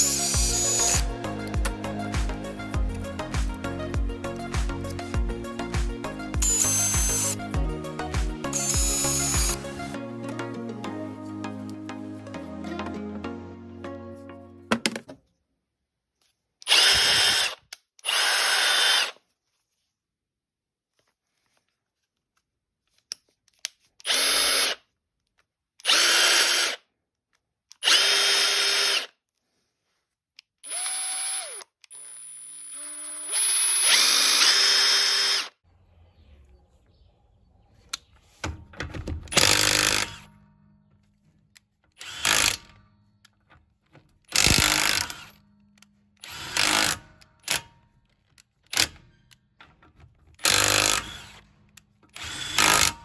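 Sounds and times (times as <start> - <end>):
impact wrench motor whine: 0.0 - 7.4, 8.2 - 9.7, 16.7 - 19.1, 25.8 - 26.8, 27.8 - 29.1, 30.6 - 35.5, 39.3 - 40.3, 42.0 - 42.8, 44.3 - 45.4, 46.2 - 47.6, 50.4 - 51.5, 52.1 - 53.0.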